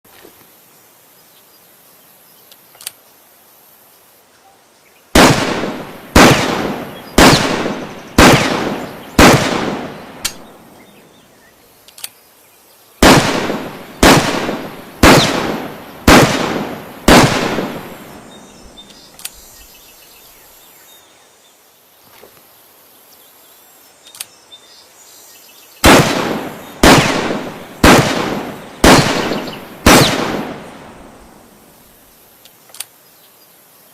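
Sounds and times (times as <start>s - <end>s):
faint click: 2.4s - 3.0s, 11.8s - 12.2s, 18.9s - 19.4s, 24.0s - 24.4s, 32.4s - 33.0s
rifle shots echoing: 5.2s - 10.7s, 13.0s - 18.9s, 25.8s - 31.6s.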